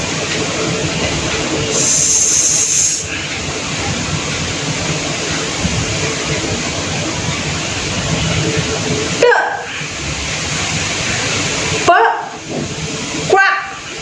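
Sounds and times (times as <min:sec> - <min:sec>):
steady background hiss: 0:00.0 - 0:14.0
brighter higher hiss: 0:01.6 - 0:04.0.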